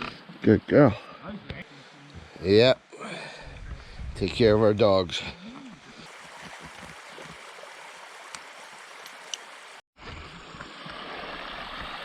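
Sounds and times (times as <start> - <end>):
stream flowing over rocks: 5.4 - 12.0.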